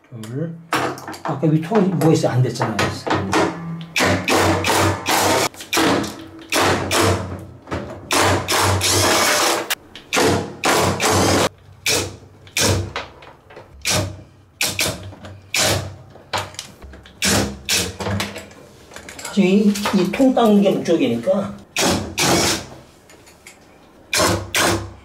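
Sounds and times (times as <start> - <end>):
hand tools knocking and clacking: 0.7 - 8.4.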